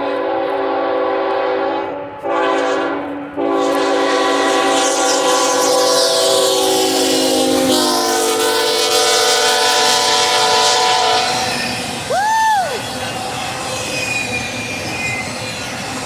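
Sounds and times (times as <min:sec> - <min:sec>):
locomotive air horn: 0:00.0 - 0:12.1
train rumbling and rushing: 0:00.0 - 0:16.0.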